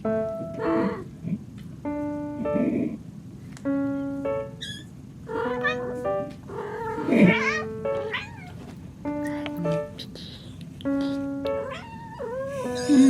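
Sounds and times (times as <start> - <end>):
music of held notes: 0.0 - 1.2, 1.8 - 4.6, 5.3 - 13.0
kittens mewing: 4.6 - 8.7, 9.3 - 13.0.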